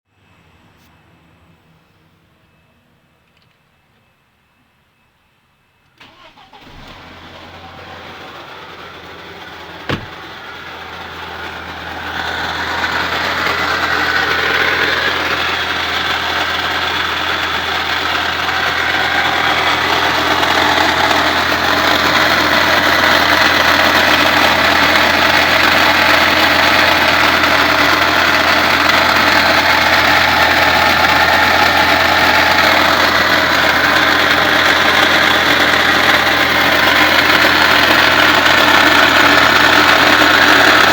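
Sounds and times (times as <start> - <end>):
car engine starting and idling: 5.9 - 40.9
broad grinding compressor noise: 6.0 - 40.9.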